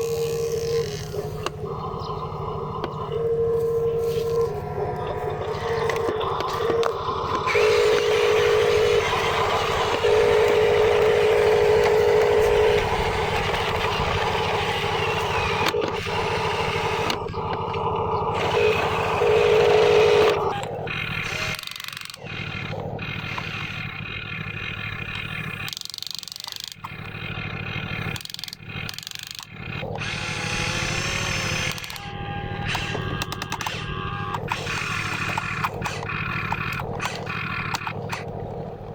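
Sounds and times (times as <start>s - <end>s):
low machine hum: 0.0s - 25.9s, 26.7s - 38.9s
higher steady tone: 0.5s - 13.4s.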